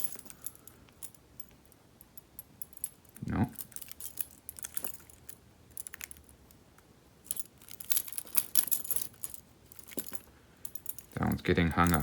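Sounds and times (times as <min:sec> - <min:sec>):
metal picks clinking and jangling: 0:00.0 - 0:06.3, 0:07.2 - 0:12.0.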